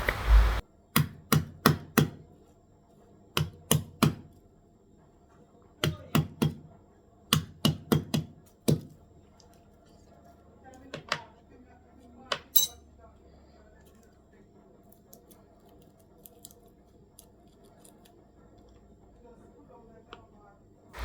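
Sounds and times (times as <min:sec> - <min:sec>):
garlic being pounded: 0:01.0 - 0:02.2, 0:03.4 - 0:04.3, 0:07.3 - 0:08.9.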